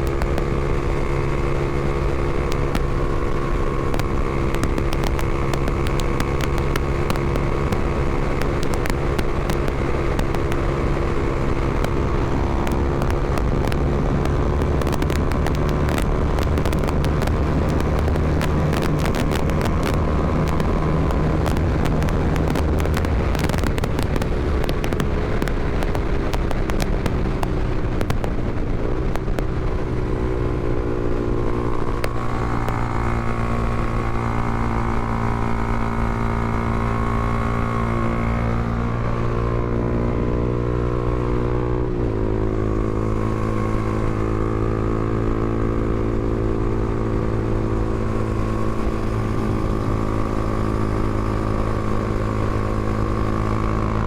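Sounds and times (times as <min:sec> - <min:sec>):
engine crackling: 0:00.0 - 0:54.0
motorcycle engine running: 0:00.0 - 0:54.0.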